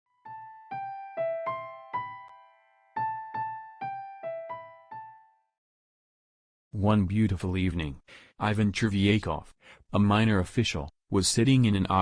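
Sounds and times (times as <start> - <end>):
slow piano melody: 0.1 - 5.6.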